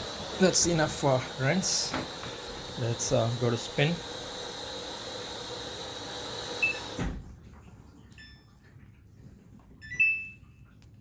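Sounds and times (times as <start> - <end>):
washing machine water hissing: 0.0 - 9.9
control panel beep: 6.6 - 6.9.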